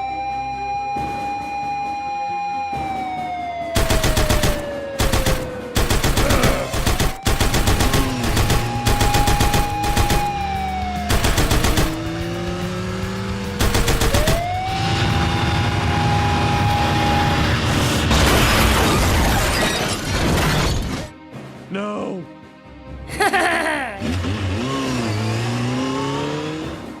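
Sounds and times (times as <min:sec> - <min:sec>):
siren sliding in pitch: 0:00.0 - 0:18.1
rapid rattling: 0:03.8 - 0:10.4, 0:11.1 - 0:12.0, 0:13.6 - 0:14.5.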